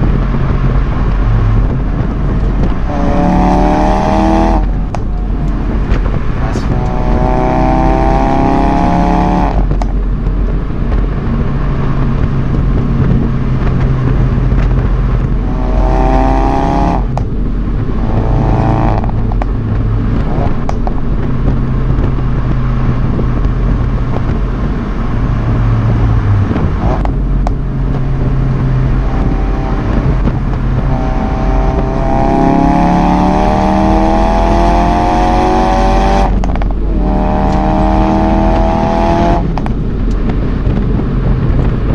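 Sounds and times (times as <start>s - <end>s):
car engine accelerating: 0.0s - 41.9s
exhaust cracks: 0.0s - 41.9s.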